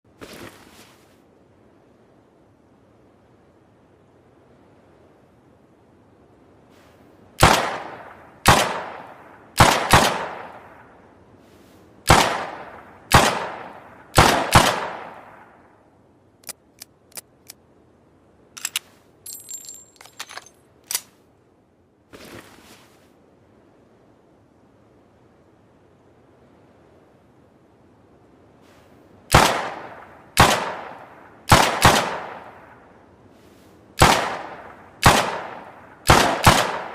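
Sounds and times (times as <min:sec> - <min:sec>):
metallic clinking and jingling: 0:18.6 - 0:21.0.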